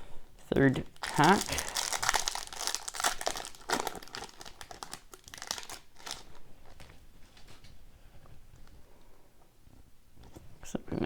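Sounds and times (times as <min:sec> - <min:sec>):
wrapper crinkling as torn open: 0:00.8 - 0:06.8.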